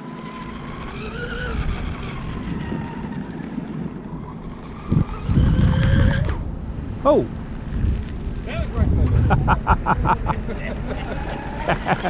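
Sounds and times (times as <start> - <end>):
toy boat motor whining: 0.0 - 6.4, 10.8 - 12.0
wind noise on microphone: 0.1 - 12.0.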